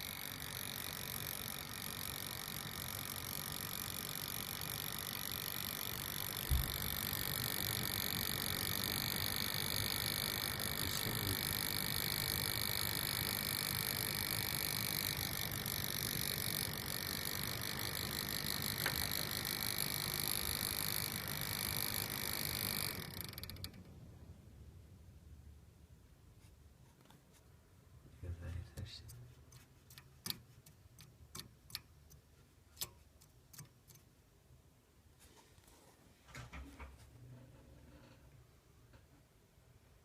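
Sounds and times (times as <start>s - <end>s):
computer high-pitched whine: 0.0s - 23.6s.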